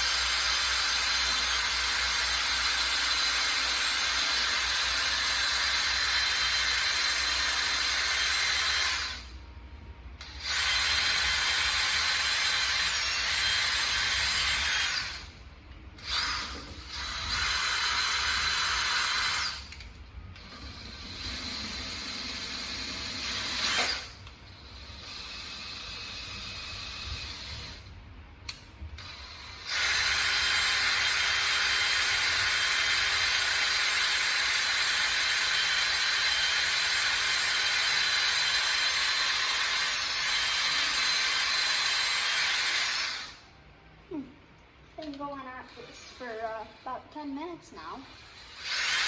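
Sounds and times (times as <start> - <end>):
drill attachment scrubbing metal: 0.0 - 9.2, 10.2 - 15.3, 29.2 - 43.4
battery drill running: 0.0 - 9.4, 10.2 - 15.4, 16.0 - 27.9, 29.0 - 43.5, 48.0 - 49.0.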